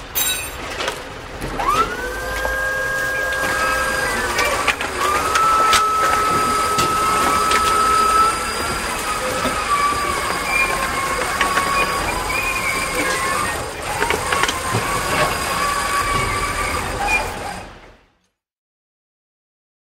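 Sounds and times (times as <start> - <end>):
mechanical rumble: 0.0 - 18.1
high wavering whine: 1.7 - 13.6.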